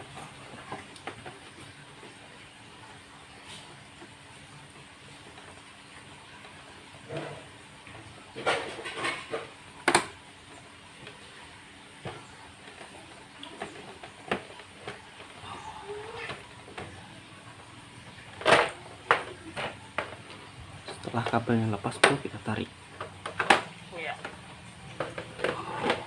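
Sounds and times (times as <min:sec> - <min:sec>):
computer housing knocks: 0:21.2 - 0:22.4.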